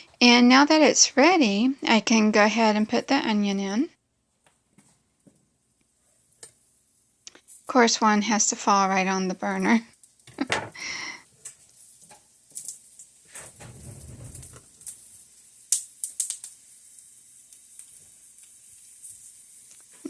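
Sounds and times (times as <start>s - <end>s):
onion frying in oil: 4.5s - 20.0s.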